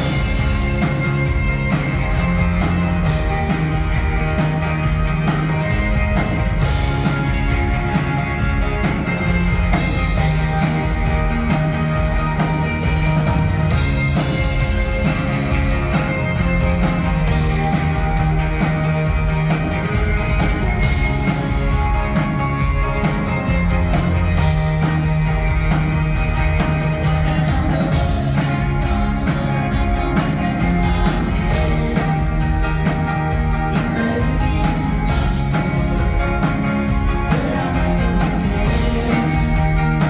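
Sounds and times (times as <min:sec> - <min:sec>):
live rock band playing: 0:00.0 - 0:40.0
steady drumbeat: 0:00.0 - 0:40.0.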